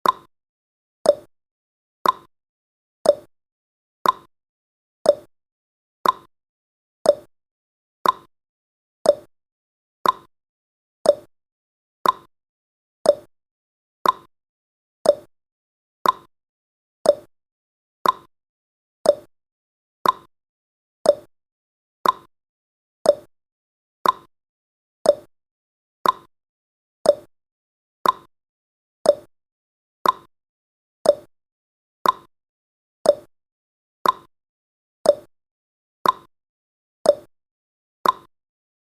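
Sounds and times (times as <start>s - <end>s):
clock-like ticking: 0.0s - 0.3s, 1.1s - 1.3s, 2.0s - 2.3s, 3.1s - 3.3s, 4.0s - 4.3s, 5.1s - 5.3s, 6.0s - 6.3s, 7.1s - 7.3s, 8.0s - 8.3s, 9.1s - 9.3s, 10.0s - 10.3s, 11.1s - 11.3s, 12.0s - 12.3s, 13.1s - 13.3s, 14.0s - 14.3s, 15.0s - 15.3s, 16.0s - 16.3s, 17.1s - 17.3s, 18.0s - 18.3s, 19.1s - 19.3s, 20.0s - 20.3s, 21.1s - 21.3s, 22.0s - 22.3s, 23.1s - 23.3s, 24.0s - 24.3s, 25.1s - 25.3s, 26.0s - 26.3s, 27.1s - 27.3s, 28.0s - 28.3s, 29.1s - 29.3s, 30.0s - 30.3s, 31.0s - 31.3s, 32.0s - 32.3s, 33.1s - 33.3s, 34.0s - 34.3s, 35.1s - 35.3s, 36.0s - 36.3s, 37.1s - 37.3s, 38.0s - 38.3s.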